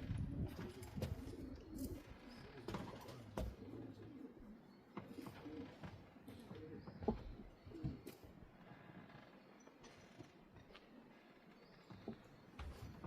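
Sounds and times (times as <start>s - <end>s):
pigeons cooing: 0.0s - 8.2s.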